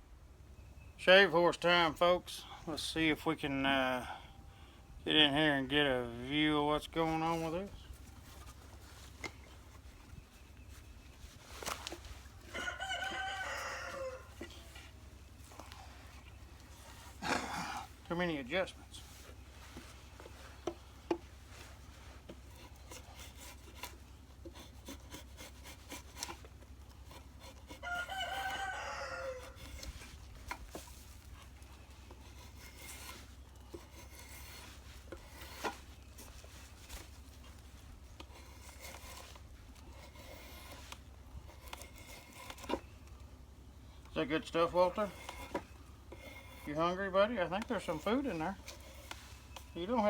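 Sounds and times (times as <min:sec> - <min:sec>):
blade shaving bark: 0:05.6 - 0:50.0
rooster crowing: 0:12.4 - 0:14.7, 0:27.8 - 0:29.8.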